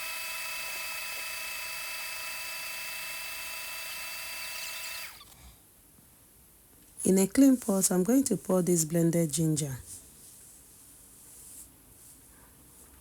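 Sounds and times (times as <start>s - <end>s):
blender whining: 0.0s - 5.4s.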